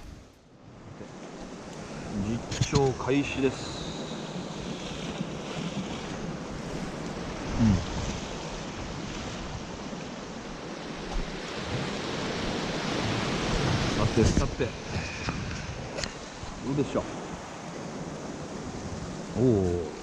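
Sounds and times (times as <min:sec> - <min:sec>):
wind buffeting microphone: 0:00.0 - 0:00.4
sea waves on rocky shore: 0:00.0 - 0:20.0.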